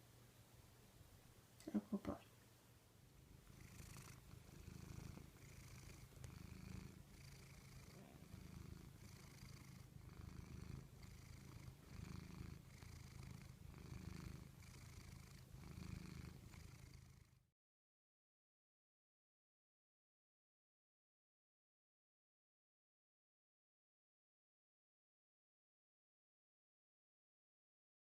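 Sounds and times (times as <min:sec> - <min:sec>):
cat purring: 0:03.1 - 0:17.5.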